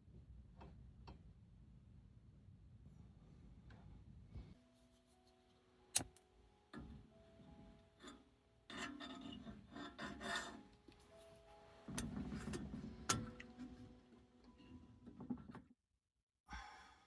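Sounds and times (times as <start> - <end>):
scraping or rubbing: 8.7 - 11.4.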